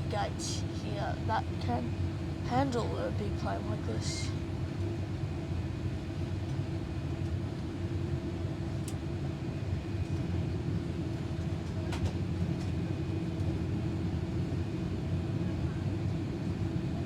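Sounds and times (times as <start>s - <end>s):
steady hum: 0.0s - 11.3s
airplane cabin rumble: 0.0s - 17.0s.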